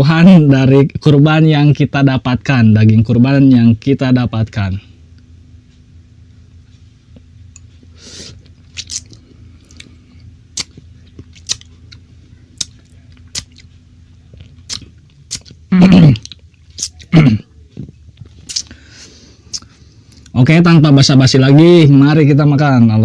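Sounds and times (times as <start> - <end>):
low steady hum: 0.0 - 23.0
mouth clicks and smacks: 8.3 - 12.0, 12.6 - 13.7, 14.3 - 17.2, 17.8 - 18.8, 19.4 - 20.4.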